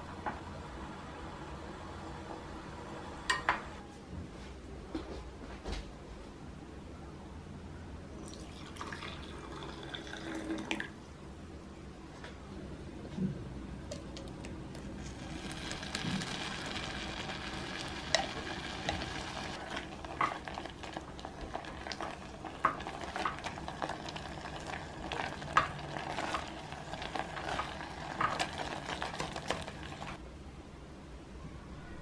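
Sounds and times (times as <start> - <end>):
food sizzling in a pan: 14.9 - 30.2.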